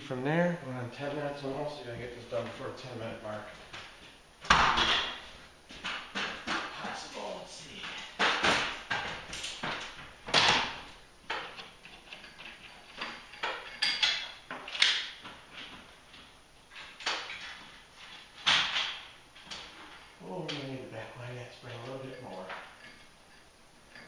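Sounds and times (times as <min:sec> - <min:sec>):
metallic clanks and clicks: 0:07.8 - 0:15.8, 0:21.6 - 0:24.0.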